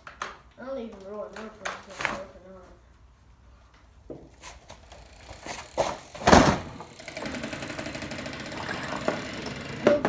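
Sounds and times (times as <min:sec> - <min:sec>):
fast steady ticking: 0:06.8 - 0:10.0.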